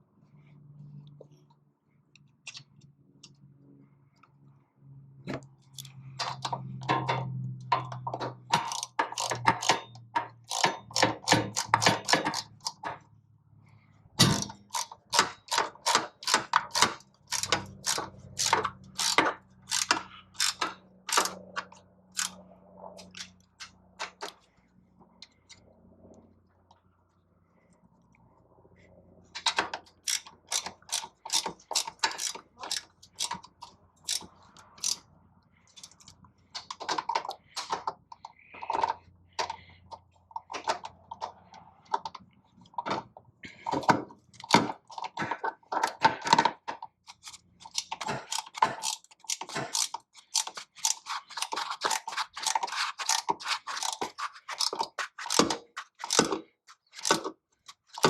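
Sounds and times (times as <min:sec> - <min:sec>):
socket ratchet clicking: 0:05.7 - 0:12.9, 0:14.3 - 0:22.4, 0:29.4 - 0:35.0, 0:47.0 - 0:58.0.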